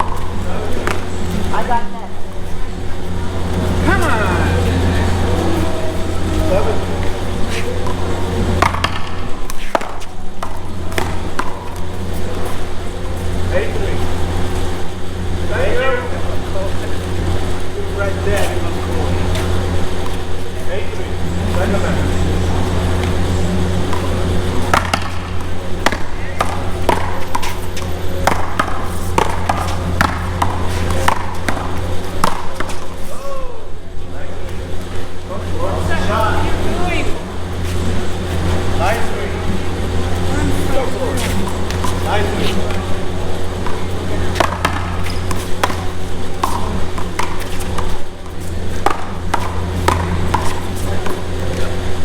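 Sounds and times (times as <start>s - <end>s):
ball cracking off paddles and wall: 0.0s - 1.8s, 6.3s - 14.6s, 22.9s - 33.3s, 37.5s - 51.9s
paddles striking ball: 7.8s - 12.1s, 23.9s - 33.0s, 48.7s - 51.3s.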